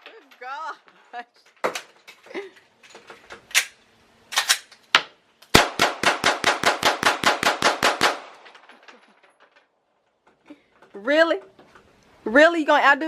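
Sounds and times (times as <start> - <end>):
gunshots: 5.5 - 8.7.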